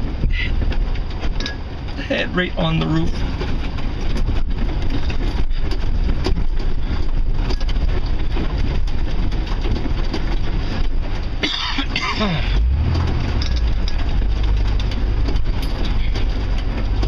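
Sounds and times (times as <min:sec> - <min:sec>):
knocks and rattles over bumps: 0:00.0 - 0:17.0
truck engine and road rumble: 0:00.0 - 0:17.0.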